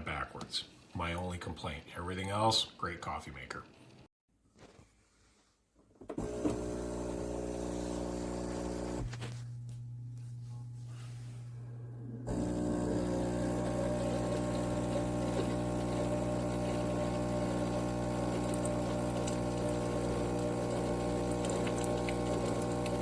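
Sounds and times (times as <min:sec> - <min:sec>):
coffee maker pump humming: 0:06.1 - 0:23.0.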